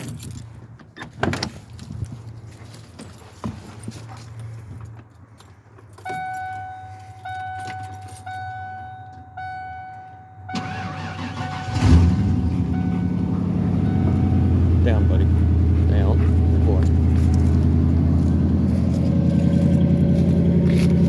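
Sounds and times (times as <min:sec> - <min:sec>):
warning chime dinging: 0:06.0 - 0:19.9
truck engine idling: 0:06.0 - 0:21.0.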